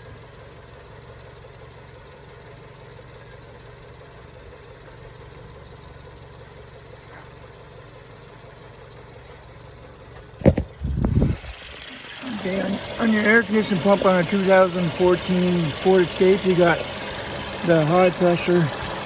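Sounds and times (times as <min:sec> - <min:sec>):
car engine idling: 0:00.0 - 0:19.0.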